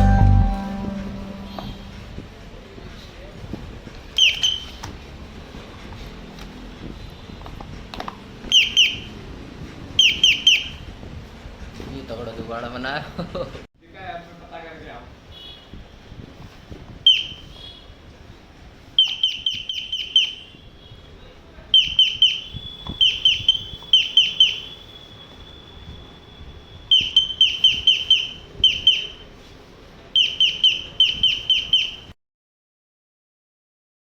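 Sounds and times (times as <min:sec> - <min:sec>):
electronic bird-chirp chime: 0:00.0 - 0:01.9
steady high tone: 0:00.0 - 0:02.2.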